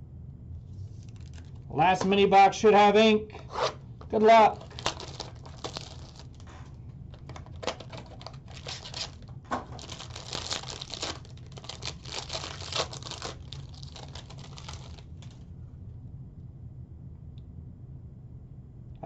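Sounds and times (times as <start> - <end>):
plastic wrapping tearing and crinkling: 1.0 - 1.6, 3.5 - 15.4.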